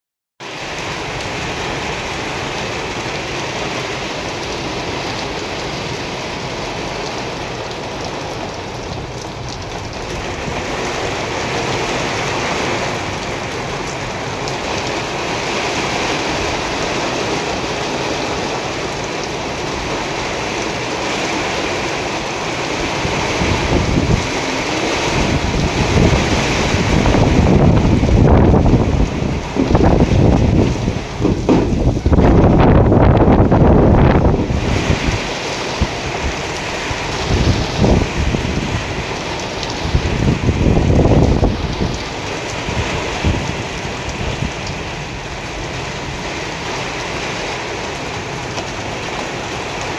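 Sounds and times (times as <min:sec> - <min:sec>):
heavy rain falling: 0:00.4 - 0:49.9
wind buffeting microphone: 0:08.8 - 0:45.4.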